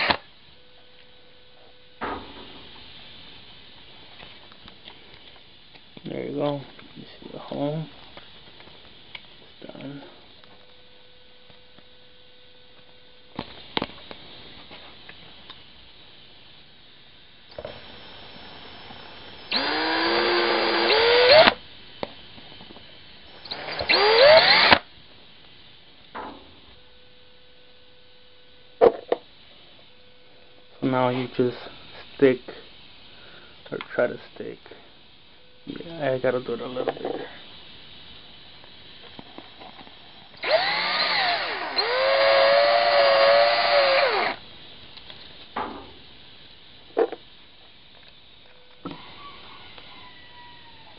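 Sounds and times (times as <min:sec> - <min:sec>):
power drill whining: 0:00.0 - 0:00.2, 0:17.5 - 0:21.6, 0:23.3 - 0:24.9, 0:40.3 - 0:44.4.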